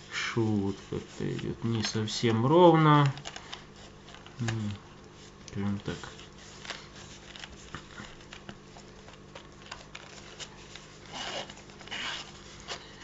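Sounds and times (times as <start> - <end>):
case clicks and rubbing: 6.0 - 13.0.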